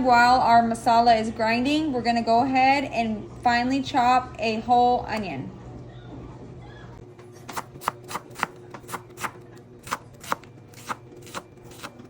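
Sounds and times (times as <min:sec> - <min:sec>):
knife chopping onion on cutting board: 0:07.4 - 0:12.0.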